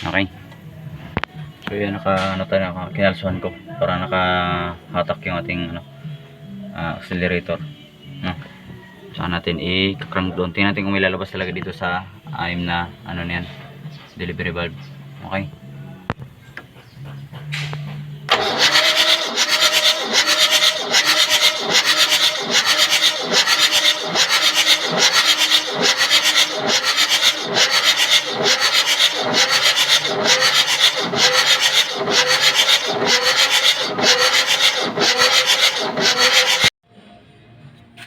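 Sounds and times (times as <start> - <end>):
diesel engine cranking on starter: 17.6 - 36.7.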